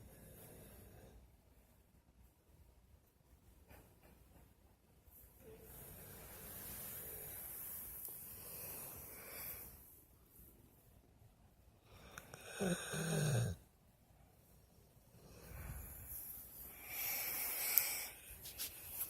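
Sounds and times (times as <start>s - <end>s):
dog snoring: 12.3s - 13.6s.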